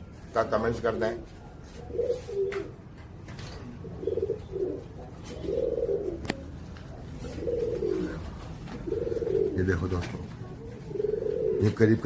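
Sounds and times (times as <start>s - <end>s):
pigeons cooing: 0.7s - 12.0s.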